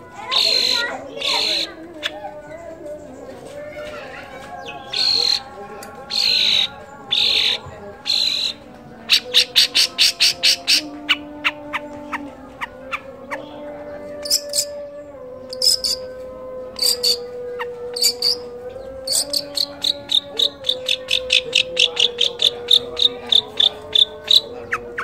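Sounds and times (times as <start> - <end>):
bird singing sharp chirps: 0.3 - 1.8, 4.6 - 5.5.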